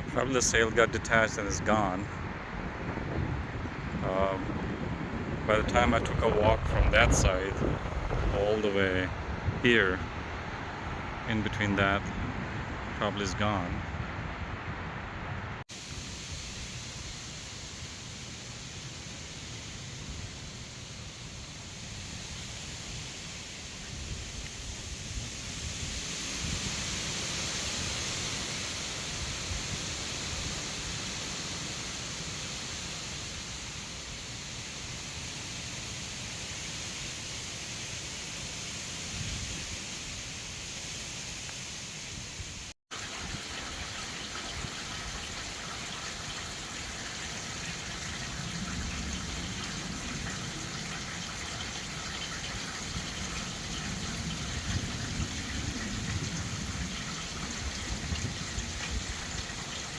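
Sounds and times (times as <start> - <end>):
gusty wind on microphone: 0.0 - 17.2, 19.9 - 31.0, 38.9 - 40.6, 47.0 - 59.9.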